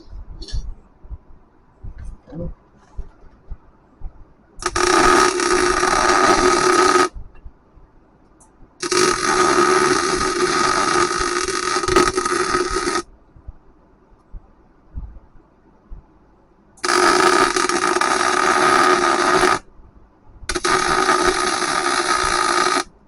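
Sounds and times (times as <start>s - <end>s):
welding arc: 4.6s - 7.2s, 8.8s - 13.1s, 16.8s - 19.7s, 20.5s - 23.0s.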